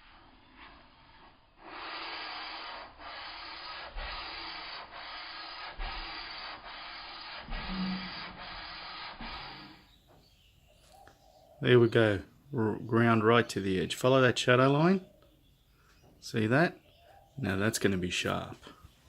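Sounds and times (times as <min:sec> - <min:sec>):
plane iron rubbed on water stone: 0:00.6 - 0:09.8.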